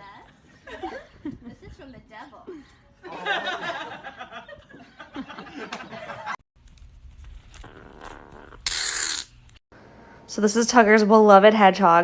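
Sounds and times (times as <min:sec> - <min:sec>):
rustling noise: 0:06.6 - 0:08.3.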